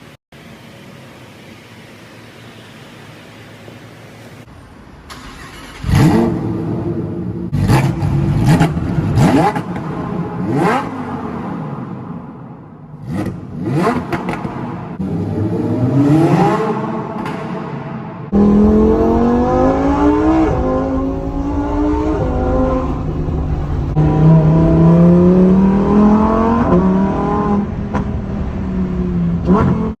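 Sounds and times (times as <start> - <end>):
car engine accelerating at high revs: 5.8 - 12.2, 12.9 - 17.6, 18.2 - 30.0.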